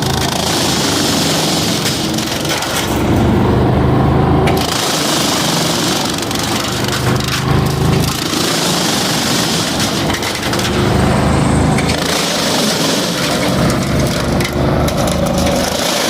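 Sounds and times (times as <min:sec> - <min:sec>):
wood chipper running: 0:00.0 - 0:16.0.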